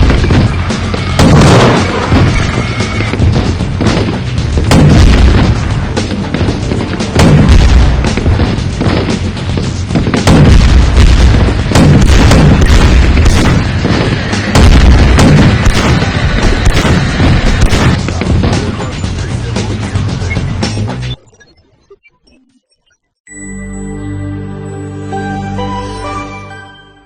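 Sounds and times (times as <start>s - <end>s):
heavy booms: 0.0s - 18.9s
loud background music: 0.0s - 21.2s.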